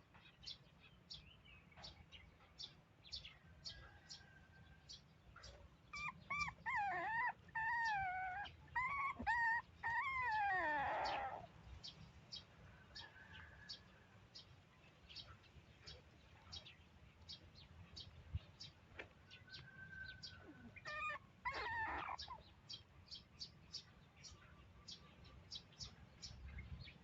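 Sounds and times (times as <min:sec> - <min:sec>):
baby monkey crying: 0:06.0 - 0:11.5.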